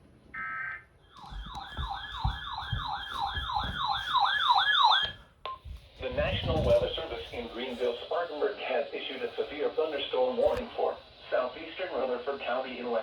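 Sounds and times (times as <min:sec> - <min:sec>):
wailing electronic siren alert: 0:00.4 - 0:05.2.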